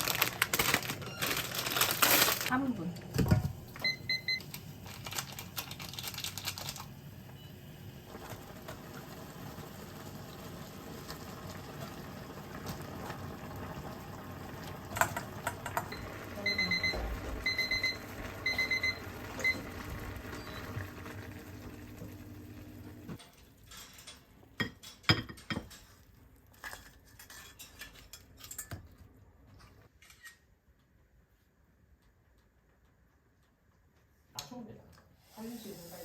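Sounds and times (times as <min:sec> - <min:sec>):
appliance humming: 0:00.0 - 0:23.2
appliance beeping: 0:00.6 - 0:04.7, 0:14.8 - 0:23.2.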